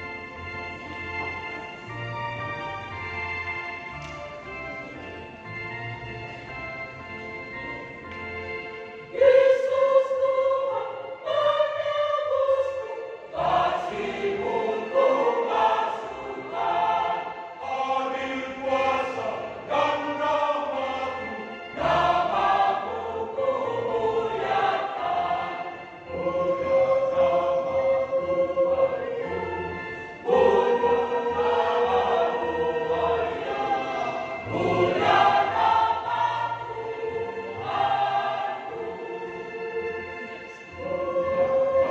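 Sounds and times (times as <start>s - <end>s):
choir singing in harmony: 0.0s - 2.0s, 7.6s - 41.9s.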